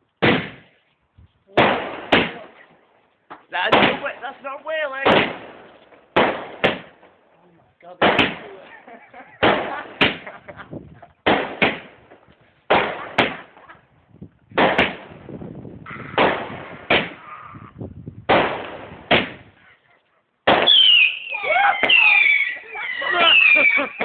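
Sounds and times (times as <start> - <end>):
fireworks bangs: 0.2 - 0.8, 1.5 - 2.8, 3.5 - 7.2, 8.0 - 8.6, 9.3 - 13.8, 14.5 - 17.3, 18.2 - 19.6, 20.4 - 24.0
shrieking whistle with falling pitch: 20.8 - 24.0.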